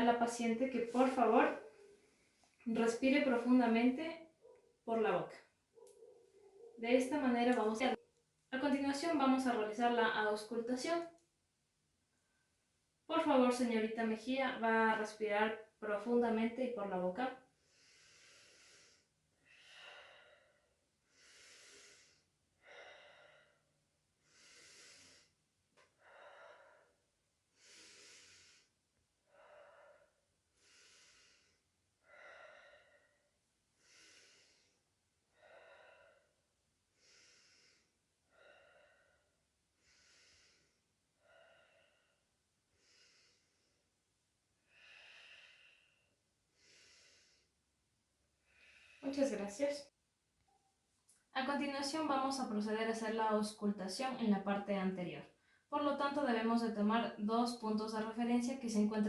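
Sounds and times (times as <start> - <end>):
woman breathing deeply: 17.5 - 44.0, 44.6 - 47.7, 48.4 - 49.1.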